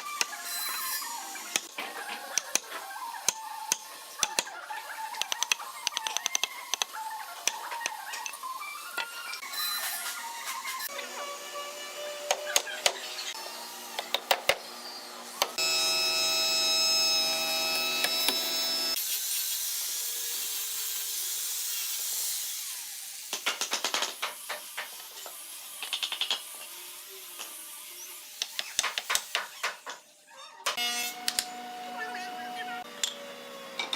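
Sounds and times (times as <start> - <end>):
power tool running: 10.9 - 23.3
hiss: 19.0 - 29.7.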